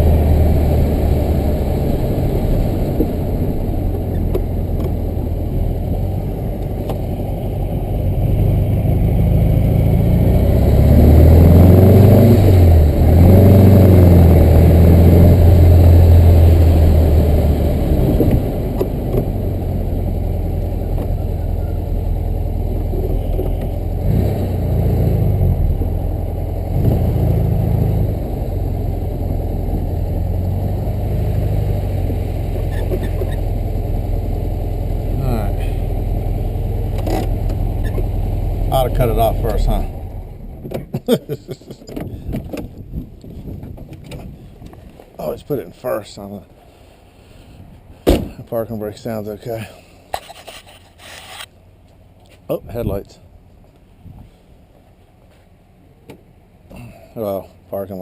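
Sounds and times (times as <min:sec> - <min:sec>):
car engine revving: 0:00.0 - 0:40.9.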